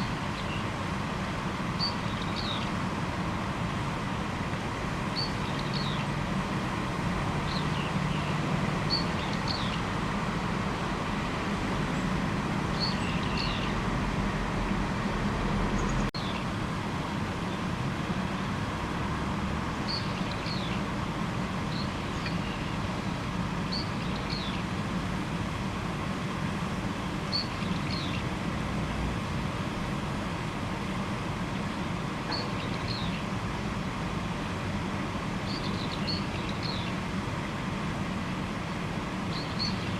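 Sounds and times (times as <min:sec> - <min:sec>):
background rumble and hiss: 0:00.0 - 0:39.9
small bird chirping: 0:01.8 - 0:02.7, 0:05.2 - 0:06.1, 0:07.5 - 0:09.8, 0:12.7 - 0:13.8, 0:19.9 - 0:20.8, 0:23.7 - 0:24.6, 0:27.3 - 0:28.2, 0:32.3 - 0:33.2, 0:35.4 - 0:36.9, 0:39.3 - 0:39.9.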